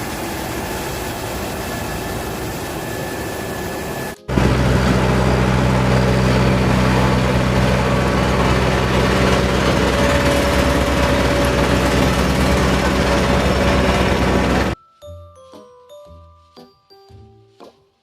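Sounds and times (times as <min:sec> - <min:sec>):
vehicle engine running: 0:04.3 - 0:14.8.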